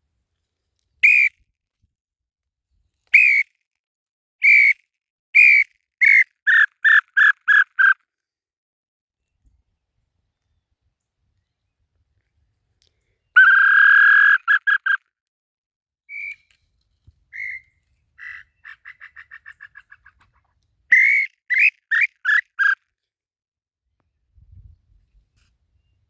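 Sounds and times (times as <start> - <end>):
loud whistled call notes: 1.0 - 1.3
bird answering song: 13.4 - 15.0, 16.1 - 16.5, 17.3 - 19.6.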